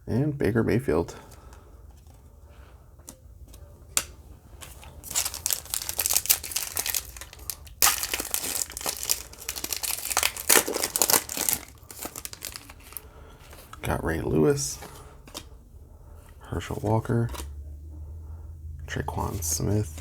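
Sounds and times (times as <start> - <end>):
wrapper crinkling: 4.0 - 13.1
plastic foil pack tearing: 4.6 - 13.0.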